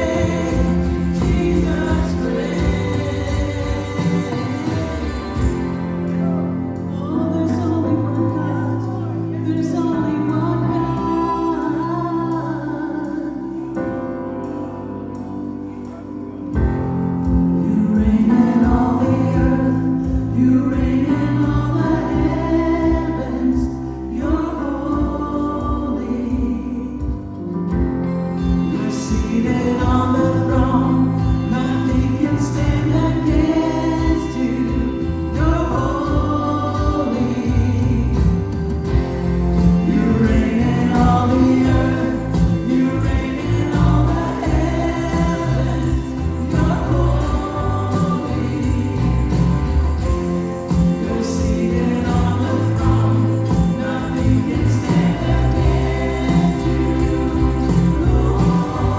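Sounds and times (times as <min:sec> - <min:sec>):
gospel choir singing: 0:00.0 - 0:15.3, 0:16.3 - 0:58.9
steady bass: 0:00.0 - 0:58.9.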